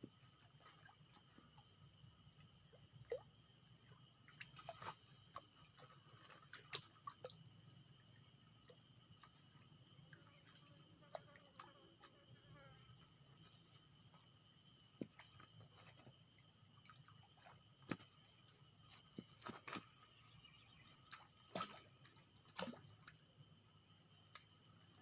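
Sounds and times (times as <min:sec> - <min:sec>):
faint outdoor ambience: 0:00.0 - 0:25.0.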